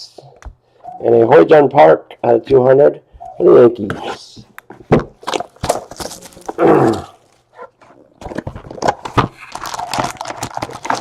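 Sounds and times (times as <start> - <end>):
trading cards clicking and rustling: 5.2 - 11.0.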